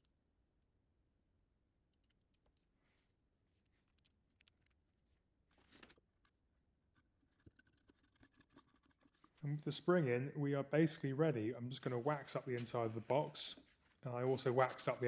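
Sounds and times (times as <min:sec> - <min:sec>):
faint small clicks: 0:00.0 - 0:00.5, 0:01.8 - 0:06.4
soft scrape: 0:11.8 - 0:15.0.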